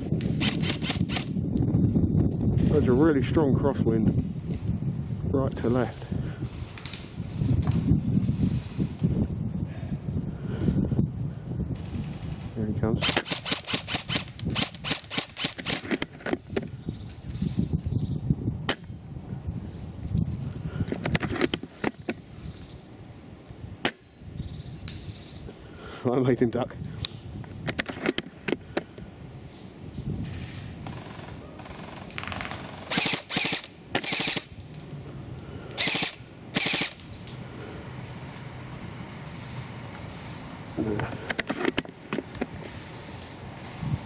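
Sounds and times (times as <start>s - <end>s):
wind rumble on microphone: 0.0s - 44.0s
airsoft guns firing: 13.0s - 16.0s, 30.9s - 34.6s.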